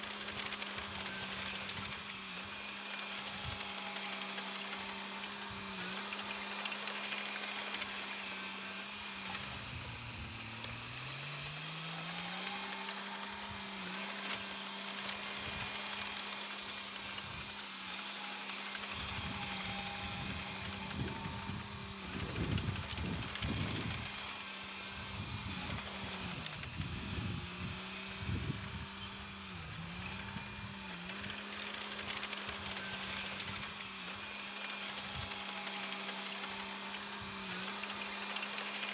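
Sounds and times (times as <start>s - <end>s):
bulldozer diesel engine running: 0.0s - 38.9s.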